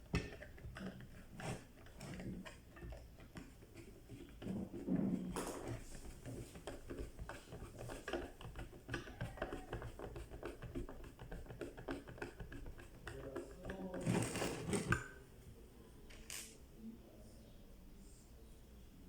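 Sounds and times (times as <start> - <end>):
clicks taps and rattles of parts: 0.0 - 4.6, 5.3 - 15.2.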